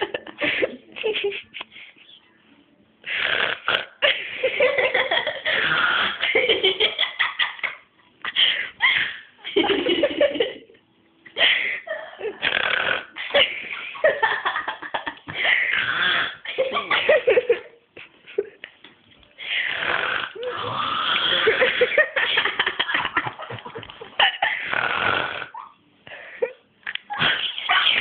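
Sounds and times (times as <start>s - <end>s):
person snoring: 3.0s - 4.0s, 5.4s - 6.2s, 12.3s - 13.2s, 15.5s - 16.4s, 19.5s - 22.0s, 24.6s - 25.6s
people laughing: 13.2s - 15.7s, 16.5s - 18.8s, 21.3s - 24.7s.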